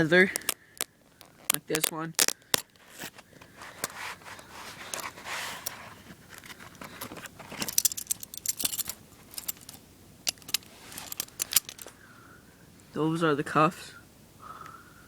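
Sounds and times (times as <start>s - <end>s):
handcuffs clinking and clicking: 0.3s - 4.0s, 4.8s - 12.0s
short rustle: 1.2s - 12.0s.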